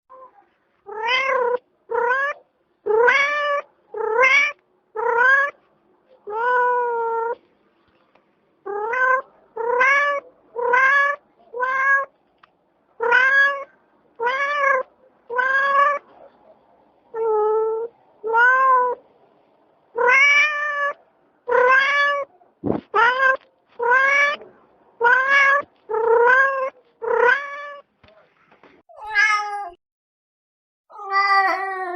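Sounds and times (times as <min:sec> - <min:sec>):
cat meowing: 0:00.1 - 0:05.6, 0:06.2 - 0:07.4, 0:08.6 - 0:12.1, 0:13.0 - 0:16.1, 0:17.1 - 0:19.0, 0:20.0 - 0:22.3, 0:22.9 - 0:24.4, 0:25.0 - 0:27.9, 0:28.9 - 0:29.8, 0:30.9 - 0:31.9.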